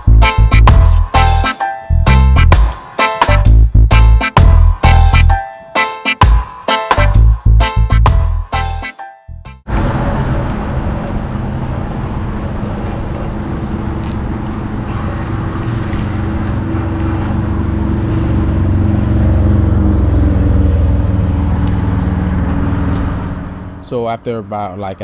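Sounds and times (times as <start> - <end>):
road traffic: 0.0 - 5.4, 9.6 - 25.0
vehicle approaching: 9.6 - 25.0.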